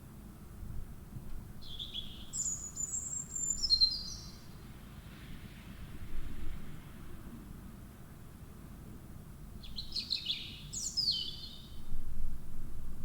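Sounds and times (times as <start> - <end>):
faint outdoor background noise: 0.0 - 13.0
small bird chirping and whistling: 1.6 - 4.4, 9.7 - 11.7.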